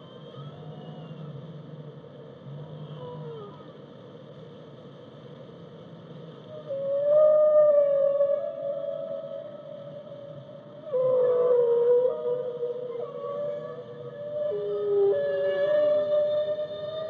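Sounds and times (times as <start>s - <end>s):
whale calls: 6.5s - 17.0s.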